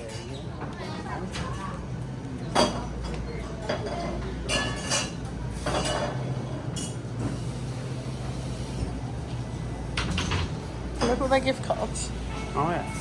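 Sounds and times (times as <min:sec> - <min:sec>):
cups and dishes clinking: 0:02.5 - 0:07.1.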